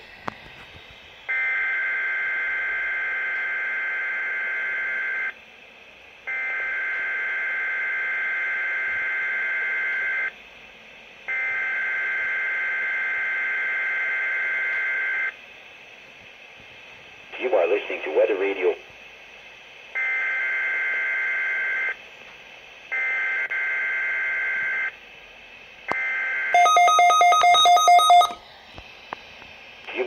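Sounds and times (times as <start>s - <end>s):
radio hiss: 15.6s - 20.0s, 28.4s - 30.0s
warbling data tone bursts: 26.3s - 28.4s.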